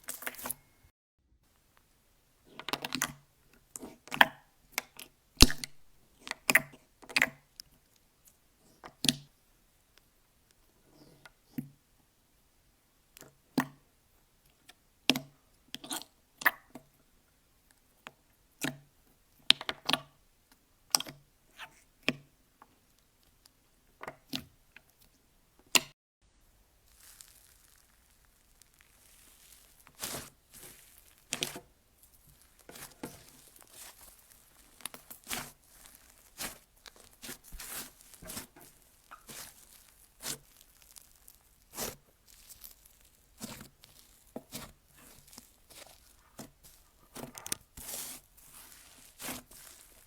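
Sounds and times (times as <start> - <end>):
slime clicking and popping: 4.1 - 5.8, 26.9 - 50.0.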